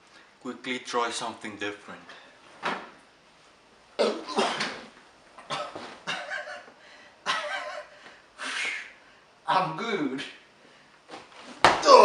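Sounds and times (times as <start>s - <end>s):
man coughing: 4.0s - 4.9s, 5.5s - 6.7s.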